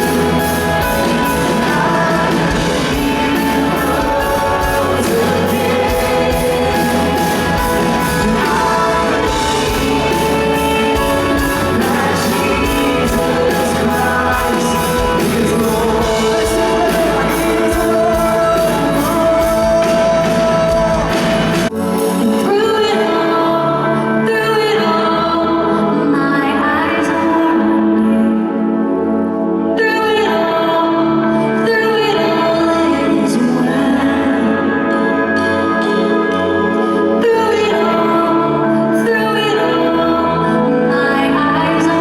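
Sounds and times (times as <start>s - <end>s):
steady drum beat: 0.0s - 21.7s
singing over a full band: 0.0s - 28.4s.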